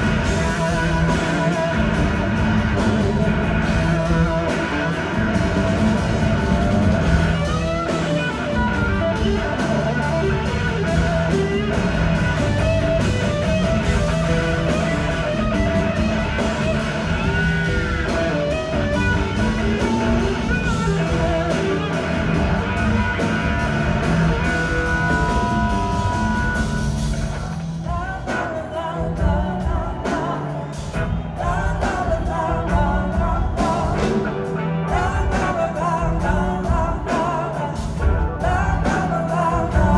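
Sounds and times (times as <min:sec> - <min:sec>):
person singing: 0:00.0 - 0:12.7, 0:27.8 - 0:39.9
drum kit: 0:00.0 - 0:39.9
electric guitar: 0:00.0 - 0:39.9
live rock band playing: 0:00.0 - 0:39.9.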